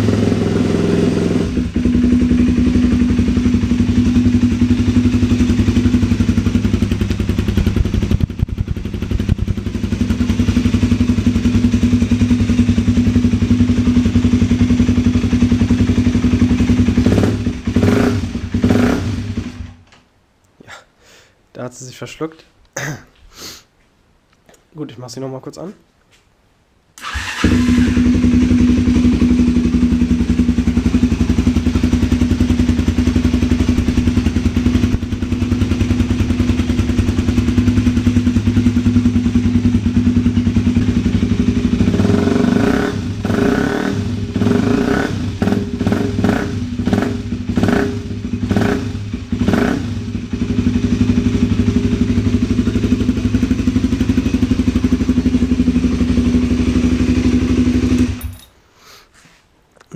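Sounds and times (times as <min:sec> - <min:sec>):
motorcycle engine idling and revving: 0:00.0 - 0:19.8, 0:27.0 - 0:58.5.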